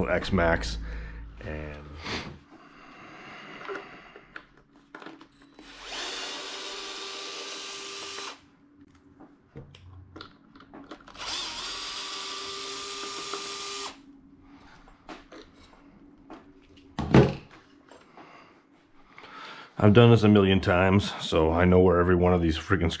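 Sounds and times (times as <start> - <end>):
cordless power driver whining: 5.6 - 8.4, 11.1 - 14.0.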